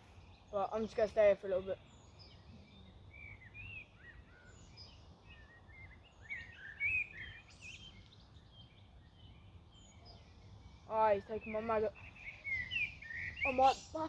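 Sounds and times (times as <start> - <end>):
faint outdoor background noise: 0.0 - 14.0
small birds chirping and warbling: 0.0 - 14.0.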